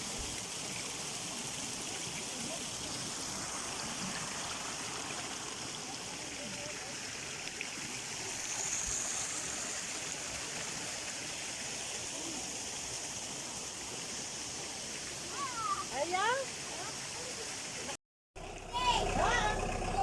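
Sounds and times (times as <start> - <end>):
stream water rushing: 0.0 - 20.0.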